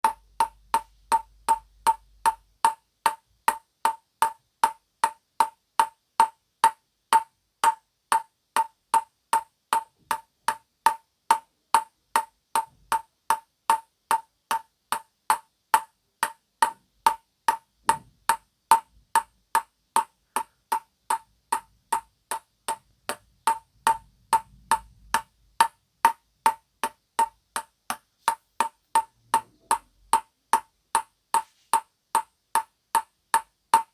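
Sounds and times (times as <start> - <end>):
ping-pong ball bouncing on paddle: 0.0 - 33.9.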